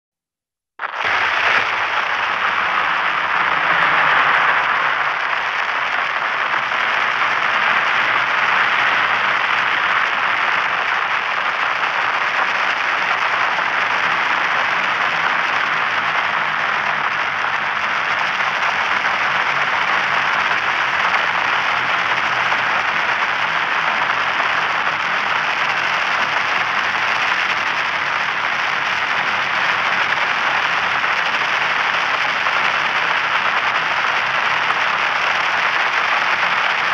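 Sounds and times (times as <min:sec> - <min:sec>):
electronic static hiss: 0:00.8 - 0:36.9.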